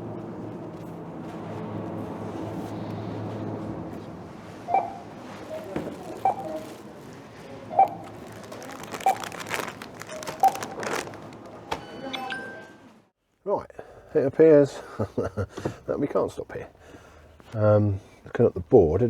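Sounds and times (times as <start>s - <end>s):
rustling and handling noise: 0.2s - 11.8s
short electronic beeps: 4.7s - 5.1s.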